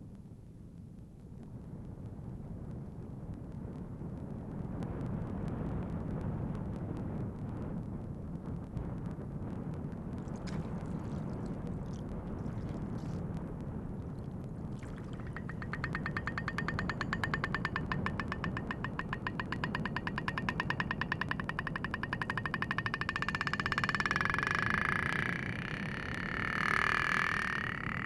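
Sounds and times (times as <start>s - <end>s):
low underwater noise: 10.2s - 28.0s
whale clicking: 14.3s - 28.0s.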